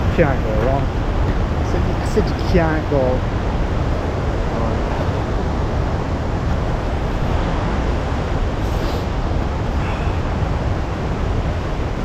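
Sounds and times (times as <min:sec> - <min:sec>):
deep rumble: 0:00.0 - 0:12.0
waterfall and stream rushing: 0:00.0 - 0:12.0.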